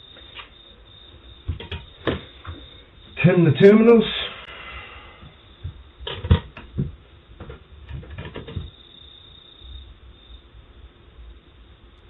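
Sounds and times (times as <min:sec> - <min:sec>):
faint hiss: 0:00.0 - 0:08.0
metal parts and tools tapping: 0:01.5 - 0:02.6.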